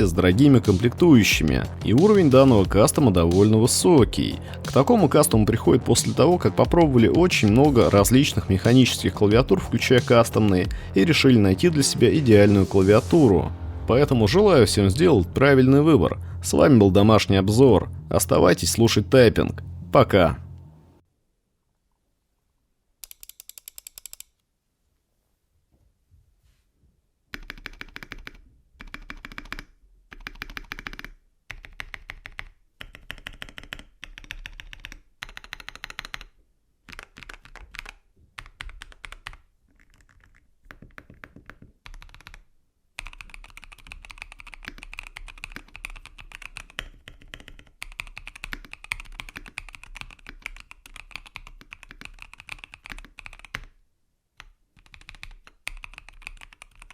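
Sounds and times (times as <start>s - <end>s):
typing on mechanical keyboard: 23.0s - 24.3s, 27.4s - 53.7s, 54.4s - 56.9s.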